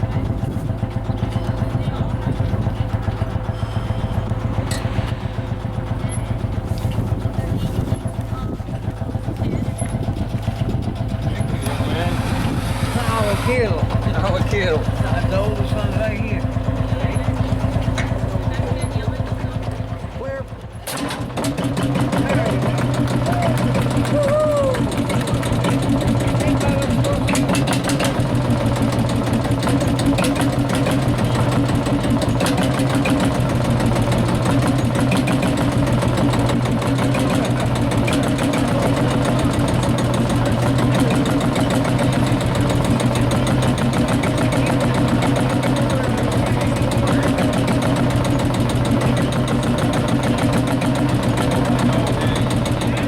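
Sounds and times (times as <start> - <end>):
faint voices: 0.0 - 21.1, 21.9 - 53.0
tractor engine idling: 0.0 - 53.0.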